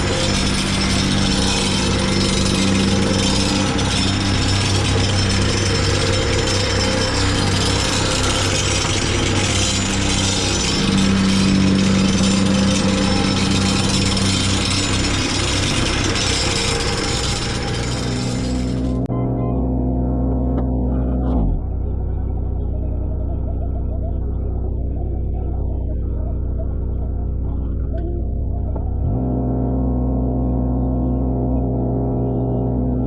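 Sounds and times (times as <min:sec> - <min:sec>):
mechanical rattling and pounding: 0:00.0 - 0:19.1
engine drone: 0:00.0 - 0:33.0.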